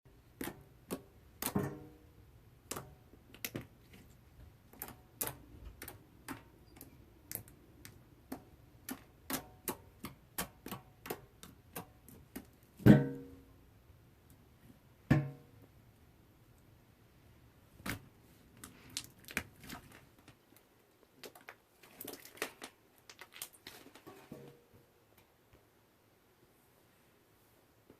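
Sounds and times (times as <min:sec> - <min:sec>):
slime crackling and popping: 0:18.6 - 0:23.8.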